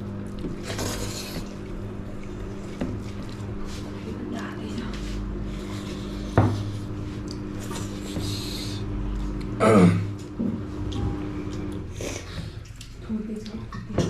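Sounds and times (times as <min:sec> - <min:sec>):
steady low hum: 0:00.0 - 0:14.0
person coughing or grunting: 0:09.6 - 0:10.2.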